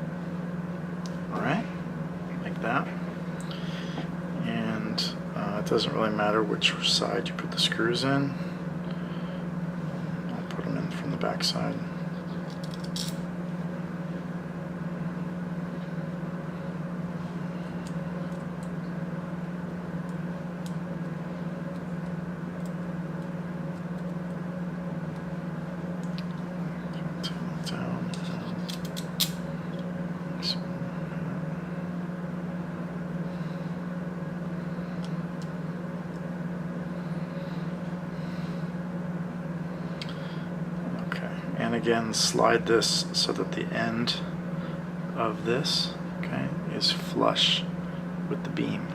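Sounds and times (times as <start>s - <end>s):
steady background hum: 0.0s - 48.9s.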